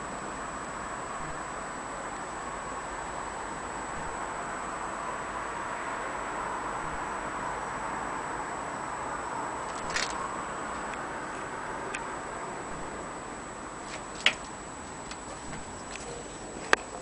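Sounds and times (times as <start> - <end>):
faint high whine: 0.0 - 17.0
steady hiss: 0.0 - 17.0.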